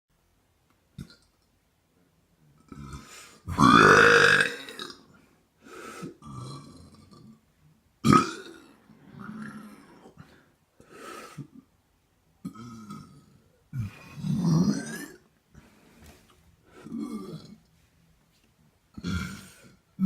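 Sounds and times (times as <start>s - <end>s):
person burping: 2.6s - 5.1s, 6.1s - 7.4s, 8.0s - 9.9s, 12.4s - 15.3s, 16.8s - 17.6s, 19.0s - 20.0s.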